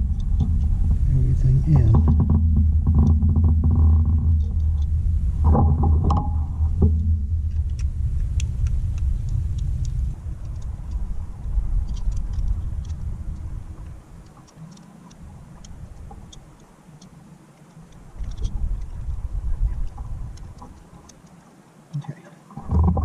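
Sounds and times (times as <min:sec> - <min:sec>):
steady low rumble: 0:00.0 - 0:21.2, 0:22.6 - 0:23.0
light clicks and taps: 0:06.0 - 0:23.0.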